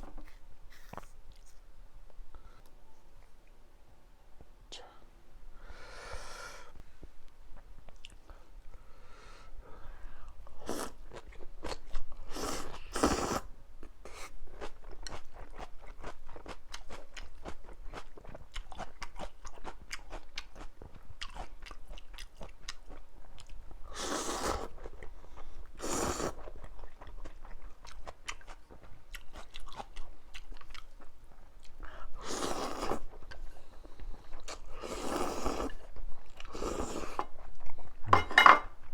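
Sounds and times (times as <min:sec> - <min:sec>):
noodle slurps: 0:32.2 - 0:33.1, 0:34.8 - 0:35.8.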